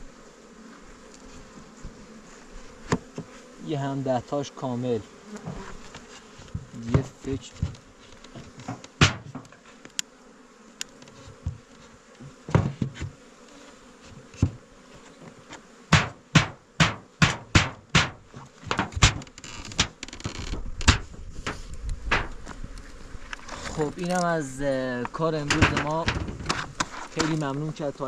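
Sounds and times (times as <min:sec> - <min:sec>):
honeybees buzzing: 0:00.0 - 0:28.0
sharp knocks: 0:06.6 - 0:09.6, 0:12.2 - 0:13.2, 0:15.9 - 0:22.3, 0:25.4 - 0:27.4.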